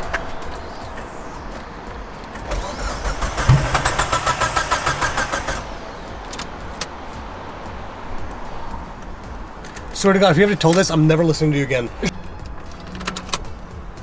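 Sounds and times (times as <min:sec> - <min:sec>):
car engine cranking on starter: 0:00.0 - 0:07.3.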